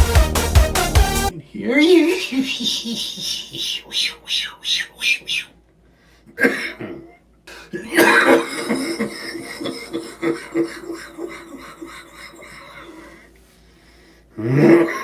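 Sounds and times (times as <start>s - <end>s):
man coughing: 6.4s - 13.2s.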